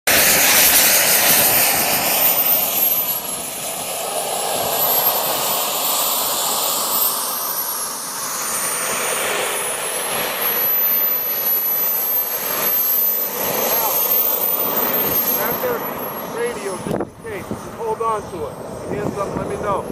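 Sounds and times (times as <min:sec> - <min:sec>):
small jet engine roar and whine: 0:00.0 - 0:19.9.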